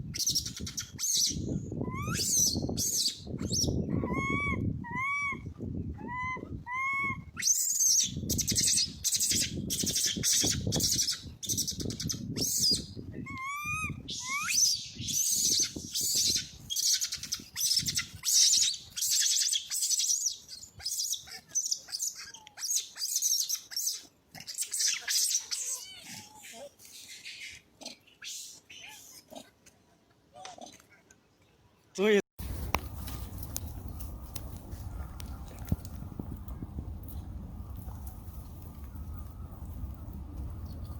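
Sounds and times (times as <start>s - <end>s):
baby monkey screaming: 0.2s - 29.3s
baby monkey coo calls: 0.2s - 29.4s.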